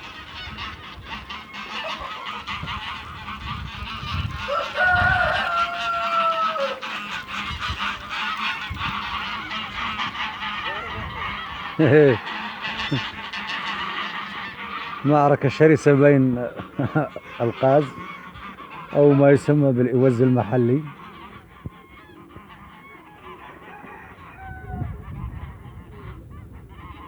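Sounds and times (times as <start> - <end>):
geese honking and cackling: 0.0 - 27.0.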